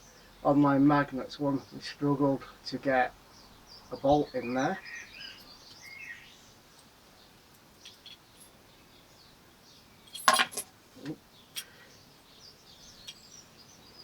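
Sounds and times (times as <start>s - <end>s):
faint birdsong: 0.0s - 14.0s
metal parts clinking: 10.1s - 10.7s.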